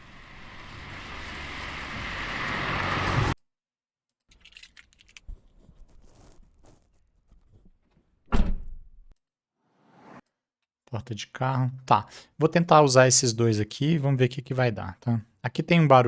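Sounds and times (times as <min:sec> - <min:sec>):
car approaching: 0:00.0 - 0:03.4.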